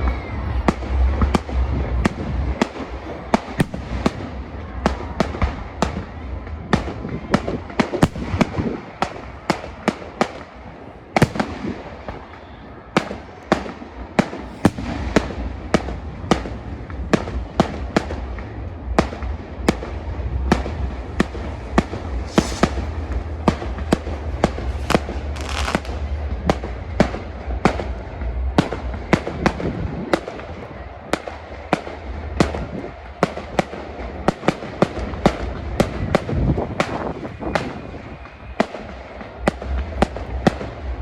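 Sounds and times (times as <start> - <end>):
low rumble: 0.0 - 8.8, 14.4 - 34.3
fireworks shells bursting: 20.3 - 28.9.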